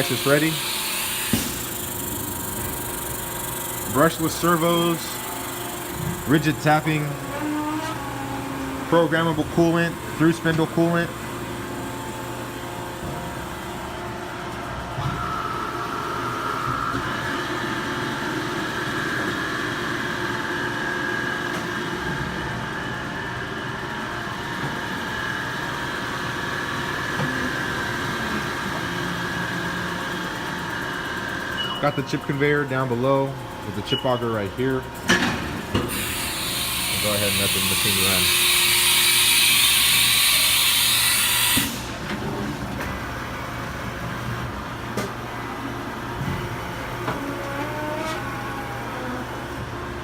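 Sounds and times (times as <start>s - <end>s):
machine hum: 0.0s - 50.0s
machine whine rising in pitch: 15.0s - 18.3s.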